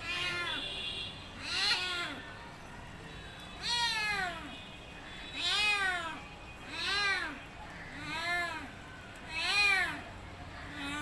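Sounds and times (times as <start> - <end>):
cat meowing: 0.0 - 0.6, 1.4 - 2.2, 5.4 - 8.7, 9.3 - 10.0.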